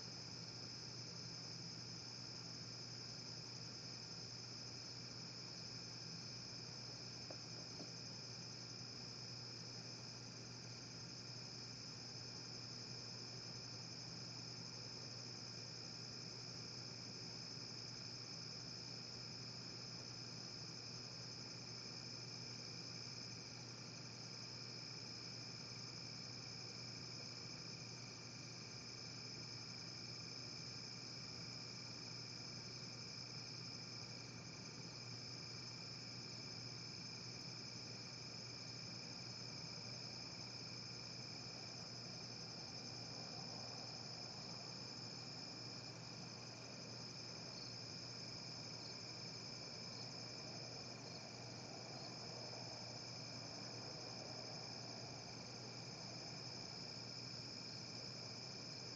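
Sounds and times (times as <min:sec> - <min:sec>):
crickets trilling: 0:34.7 - 0:58.9.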